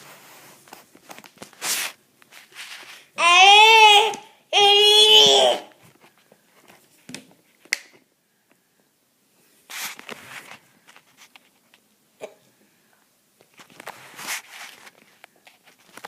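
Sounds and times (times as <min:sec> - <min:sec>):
baby squealing: 0:03.2 - 0:05.7.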